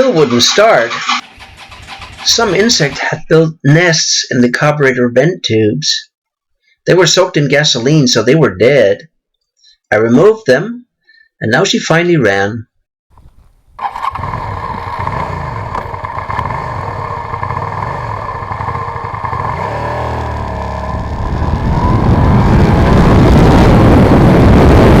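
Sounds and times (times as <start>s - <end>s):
motorcycle engine running: 0.9s - 3.0s, 13.8s - 25.0s.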